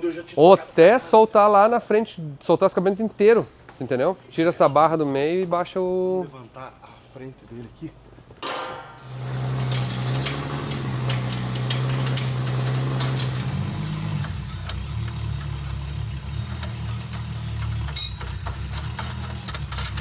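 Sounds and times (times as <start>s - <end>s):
electric motor hum: 9.0s - 19.1s.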